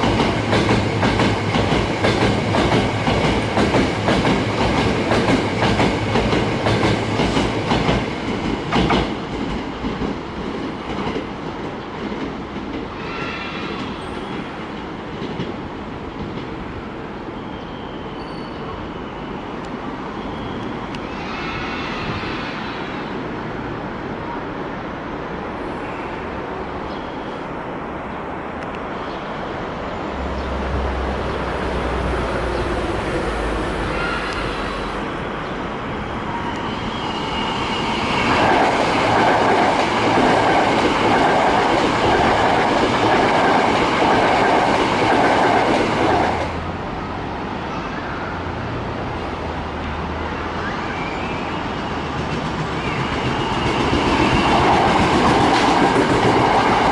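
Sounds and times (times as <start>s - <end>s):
train wheels clacking over rail joints: 0.0s - 10.2s.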